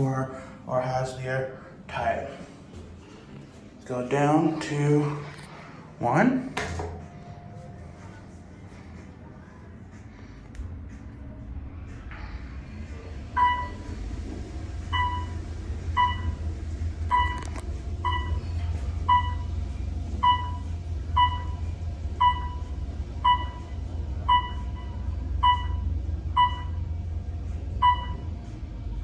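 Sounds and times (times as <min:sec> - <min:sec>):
elevator hum: 0:00.0 - 0:29.0
short elevator beeps: 0:13.4 - 0:13.9, 0:15.0 - 0:16.4, 0:17.1 - 0:19.5, 0:20.2 - 0:26.8, 0:27.8 - 0:28.3.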